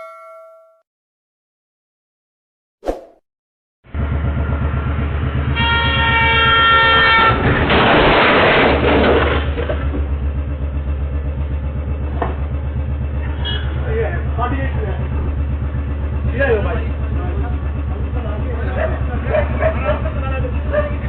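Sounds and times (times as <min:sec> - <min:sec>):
multi-tone horn: 0:05.6 - 0:07.4.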